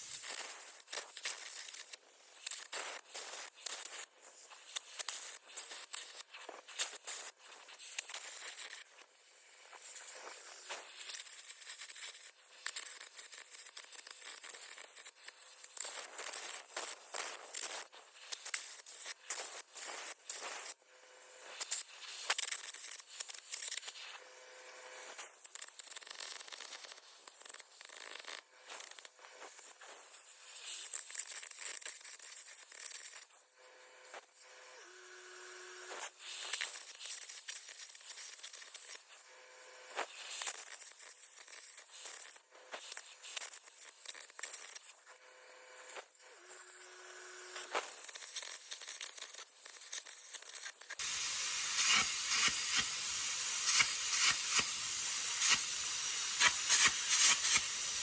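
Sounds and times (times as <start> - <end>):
arc welding crackling: 0.0 - 24.2, 45.8 - 58.0.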